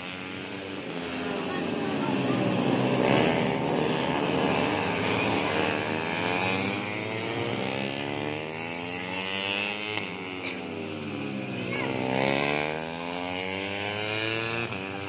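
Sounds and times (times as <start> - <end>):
racing motorcycles passing by: 0.0 - 15.0.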